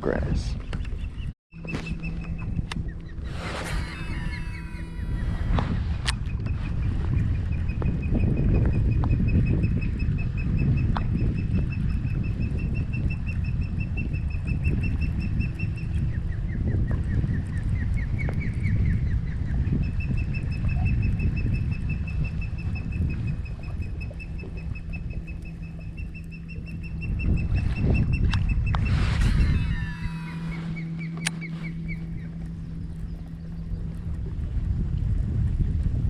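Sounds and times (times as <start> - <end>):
steady low rumble: 0.0 - 36.0
bird calling high notes: 1.6 - 5.5, 19.9 - 33.9.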